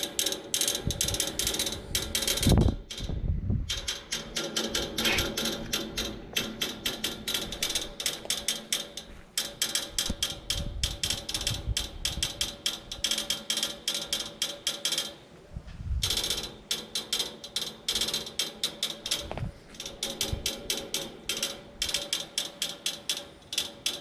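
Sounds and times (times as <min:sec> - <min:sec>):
air conditioner unit clicking rapidly: 0:00.0 - 0:15.4, 0:16.0 - 0:24.0.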